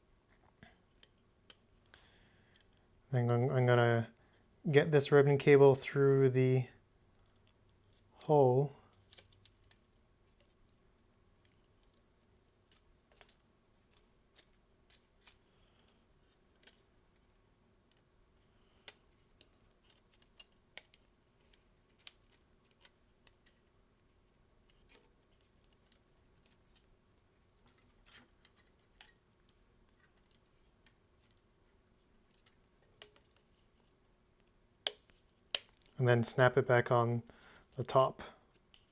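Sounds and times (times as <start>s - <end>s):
faint steady hum: 0.0s - 38.9s
small clicks and taps: 18.8s - 23.6s, 32.2s - 36.0s.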